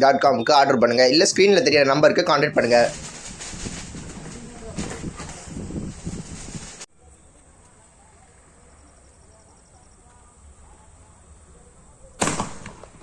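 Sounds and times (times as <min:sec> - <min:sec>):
firework bang: 0:02.0 - 0:06.9, 0:12.2 - 0:13.0.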